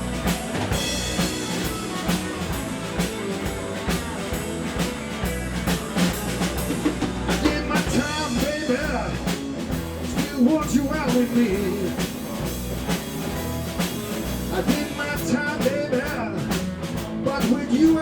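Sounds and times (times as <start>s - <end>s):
lead guitar bending notes: 0.0s - 10.1s
bass line: 0.0s - 18.0s
drum kit beat: 0.0s - 18.0s.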